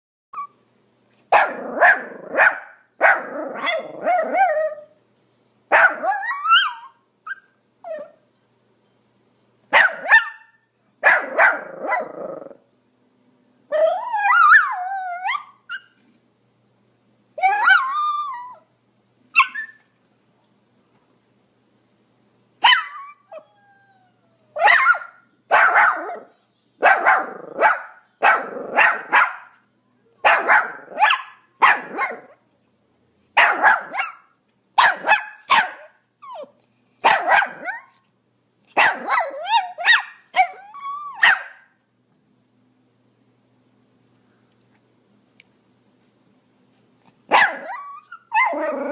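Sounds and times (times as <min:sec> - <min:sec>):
small dog barking: 0:01.3 - 0:04.9, 0:05.7 - 0:06.9, 0:09.7 - 0:12.3, 0:22.6 - 0:23.1, 0:24.6 - 0:32.4, 0:33.4 - 0:38.0, 0:38.7 - 0:41.8, 0:47.3 - 0:48.9.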